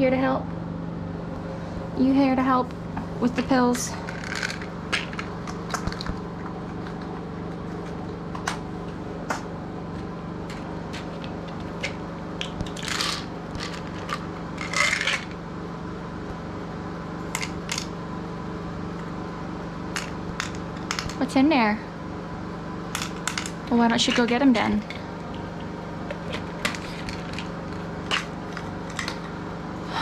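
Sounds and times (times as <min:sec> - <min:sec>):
pills rattling: 0:04.0 - 0:06.2, 0:12.4 - 0:15.4, 0:26.2 - 0:29.3.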